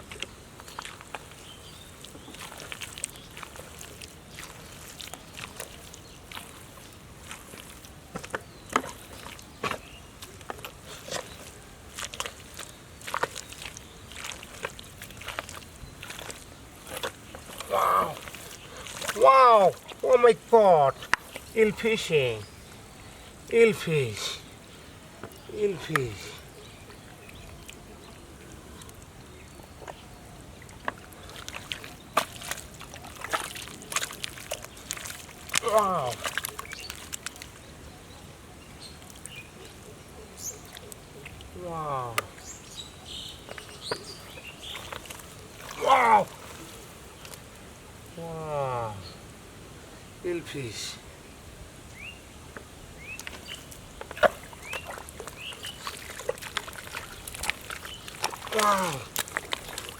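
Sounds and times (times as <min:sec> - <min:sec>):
splashing in muddy water: 0:00.0 - 0:22.5, 0:23.4 - 0:49.0, 0:52.4 - 0:59.9
bird chirps: 0:42.3 - 0:45.1.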